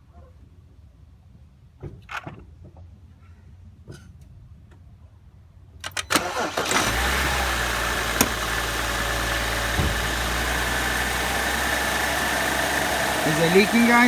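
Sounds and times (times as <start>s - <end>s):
car engine starting and idling: 5.8s - 14.0s.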